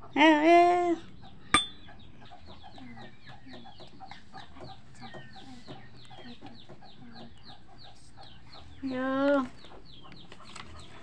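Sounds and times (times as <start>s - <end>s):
chickens clucking: 0.9s - 11.0s
sharp ringing clink: 1.6s - 1.8s.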